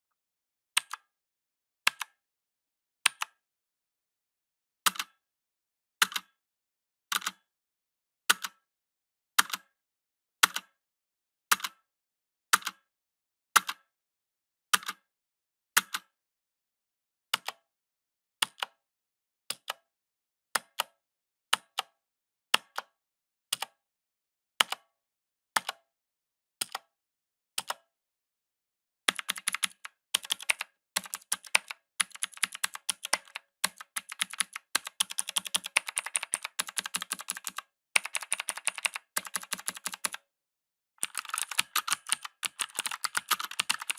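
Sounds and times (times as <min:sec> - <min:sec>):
mechanical keyboard typing: 0:29.1 - 0:40.2, 0:41.0 - 0:43.9.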